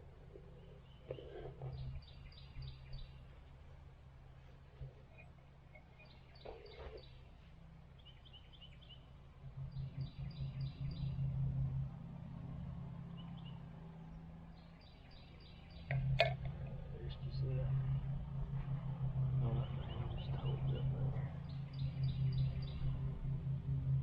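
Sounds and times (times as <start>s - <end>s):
small birds chirping: 0.0s - 3.7s, 4.3s - 11.4s, 13.1s - 18.1s, 19.3s - 23.5s
engine humming: 0.0s - 24.0s.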